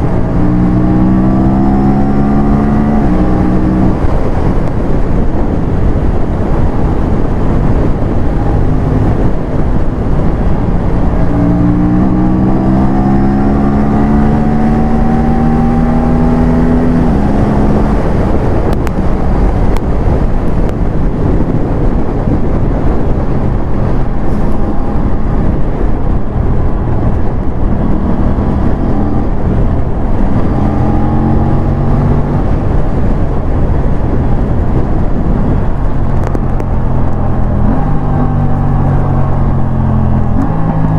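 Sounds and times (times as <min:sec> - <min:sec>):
motorcycle engine at speed: 0:00.0 - 0:40.9
wind rush: 0:00.0 - 0:40.9.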